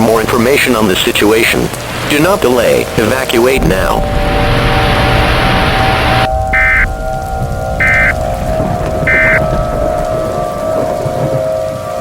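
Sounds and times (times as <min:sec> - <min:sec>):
loud rushing noise: 0:03.5 - 0:08.2
low tonal hum: 0:03.6 - 0:12.0.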